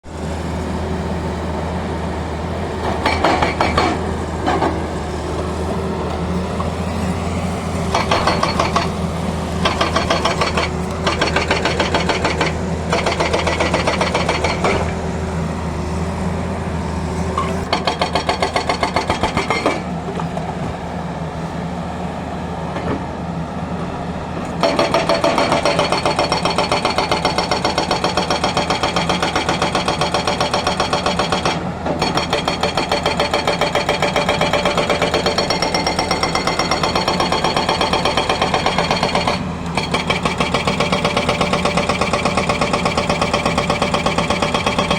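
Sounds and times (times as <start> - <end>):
diesel engine running: 0.0 - 44.9
hydraulic breaker hammering: 2.8 - 5.5, 7.9 - 9.0, 9.6 - 15.1, 17.4 - 20.5, 24.6 - 44.9.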